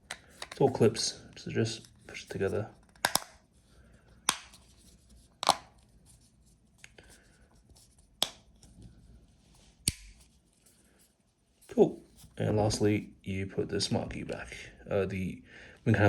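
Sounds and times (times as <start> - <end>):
plastic clips snapping: 2.8 - 3.4, 4.3 - 4.6, 9.8 - 10.2.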